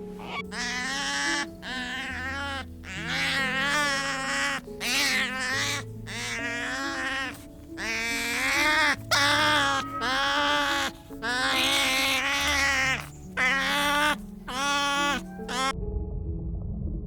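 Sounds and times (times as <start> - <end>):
cats meowing: 0.0 - 15.7.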